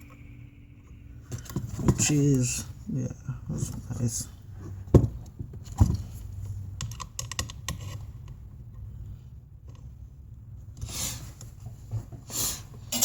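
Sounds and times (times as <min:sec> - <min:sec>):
clicks and taps of components: 0:06.8 - 0:08.4.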